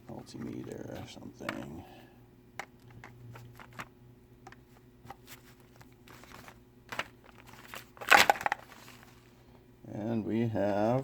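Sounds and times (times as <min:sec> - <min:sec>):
crinkling rustle: 0:05.1 - 0:09.4.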